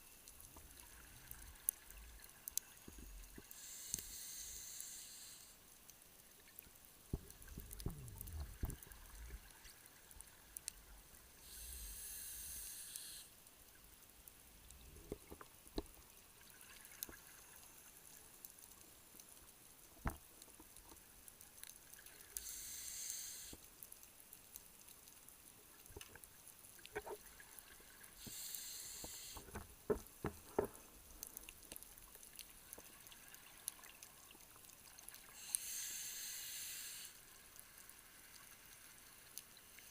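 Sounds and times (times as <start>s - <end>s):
sharp clicks and pops: 7.1s - 9.6s, 15.0s - 16.2s, 28.2s - 32.9s
diver exhaling bubbles: 7.5s - 9.4s
low rumble: 7.5s - 9.4s.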